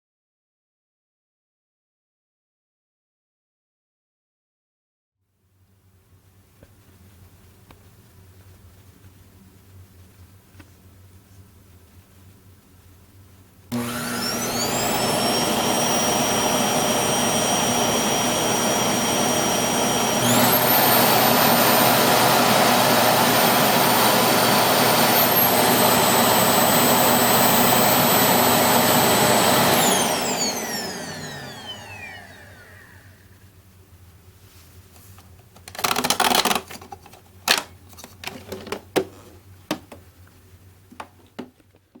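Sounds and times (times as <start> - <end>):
vacuum cleaner motor whine: 13.7 - 33.6.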